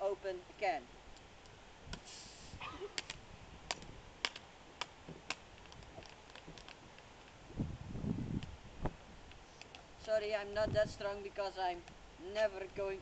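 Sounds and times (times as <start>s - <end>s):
short hiss: 1.9s - 3.0s.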